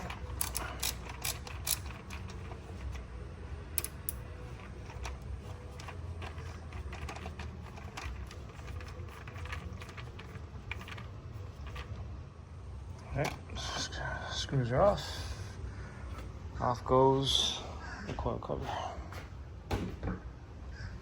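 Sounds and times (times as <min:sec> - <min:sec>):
hand tool clicks and rattles: 0:00.0 - 0:03.0, 0:03.8 - 0:11.9.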